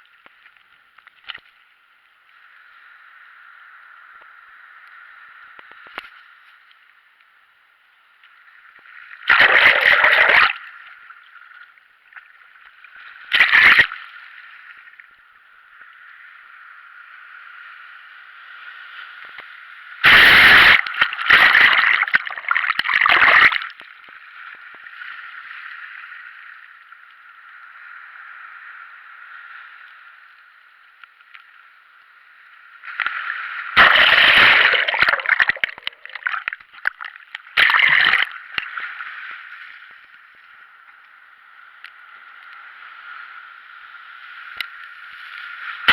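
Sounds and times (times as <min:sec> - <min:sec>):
loud splashes: 0:09.3 - 0:10.6, 0:20.0 - 0:23.7, 0:33.8 - 0:37.0, 0:37.6 - 0:38.4
sea water sloshing: 0:33.8 - 0:39.4.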